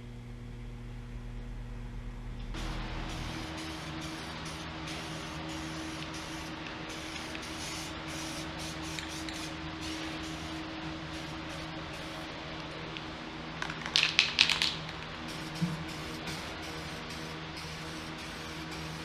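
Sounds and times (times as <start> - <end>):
steady low hum: 0.0 - 19.0
aerosol spray can hissing: 2.6 - 12.3, 14.3 - 19.0.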